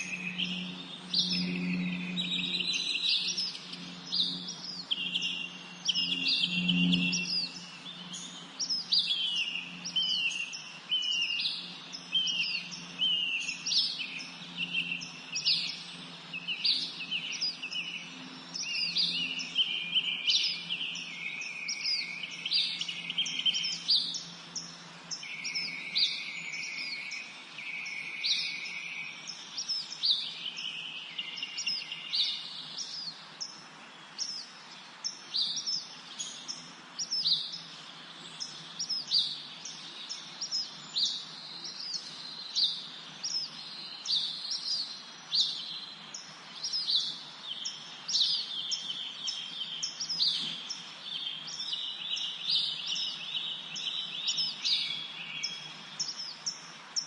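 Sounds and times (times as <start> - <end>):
songbirds chirping: 0.0 - 57.0
faint steady hiss: 19.6 - 57.0.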